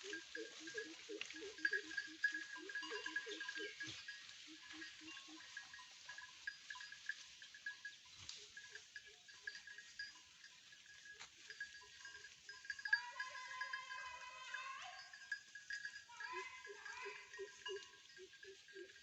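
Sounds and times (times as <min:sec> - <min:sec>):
goats bleating: 0:12.7 - 0:19.0.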